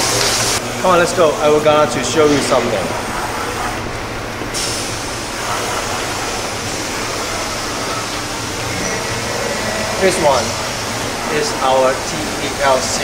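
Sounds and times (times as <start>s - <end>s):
machinery and ventilation rumble: 0.0s - 13.0s.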